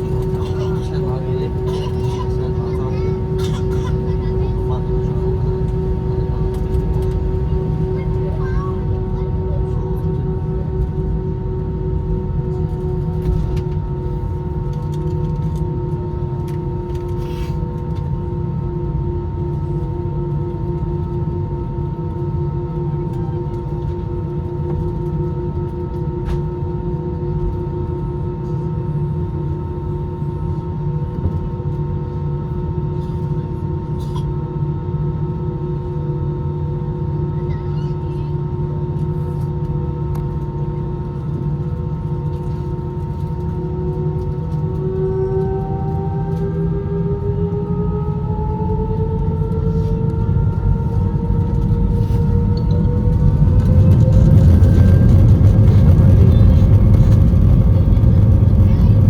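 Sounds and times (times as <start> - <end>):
aircraft engines and airflow rumble: 0.0 - 59.0
constant humming tones: 0.0 - 59.0
jet engines spooling up: 44.2 - 59.0.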